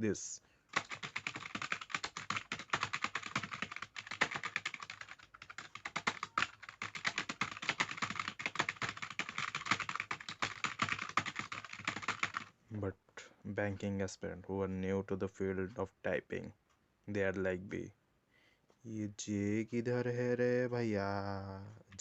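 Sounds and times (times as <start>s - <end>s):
fast typing on computer keyboard: 0.7s - 12.5s.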